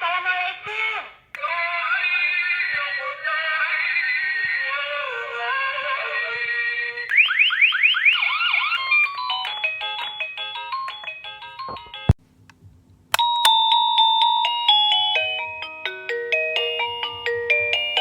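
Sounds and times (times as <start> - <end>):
electronic doorbell chime: 13.2 - 18.0.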